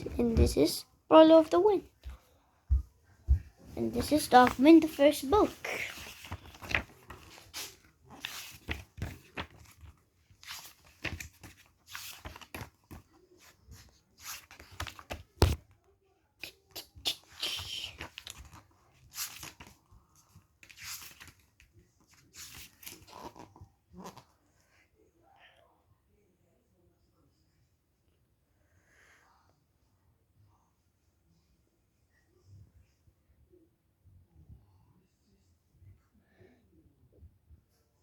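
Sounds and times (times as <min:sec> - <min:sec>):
book pages rustling: 0:00.0 - 0:02.3, 0:03.3 - 0:15.6, 0:16.4 - 0:24.3.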